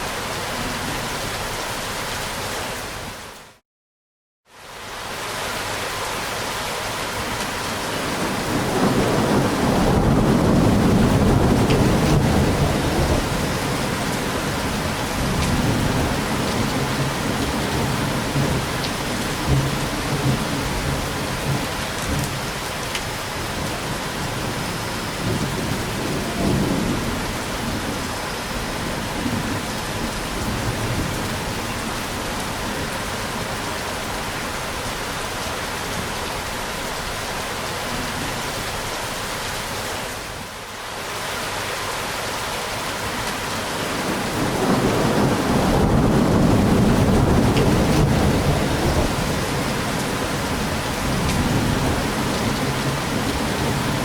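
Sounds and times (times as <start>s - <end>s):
heavy rain: 0.0s - 3.6s, 4.5s - 54.0s
rolling thunder rumble: 8.0s - 22.5s, 23.5s - 33.6s, 43.8s - 54.0s.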